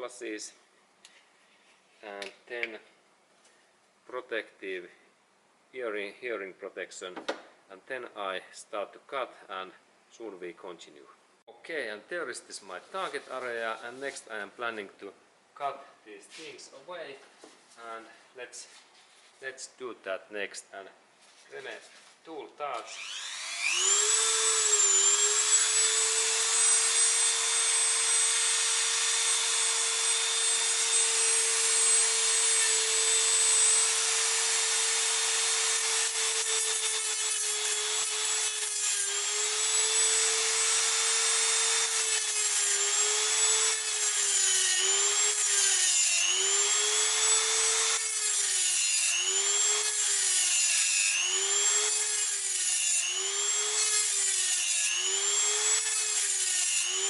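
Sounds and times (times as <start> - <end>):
rotary tool cutting metal: 22.9 - 57.0.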